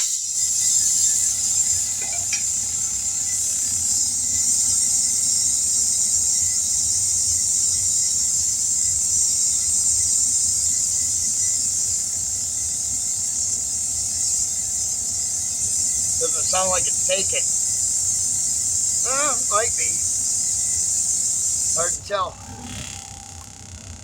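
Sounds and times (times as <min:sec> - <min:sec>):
compressed air hissing into tire: 0:00.0 - 0:06.6.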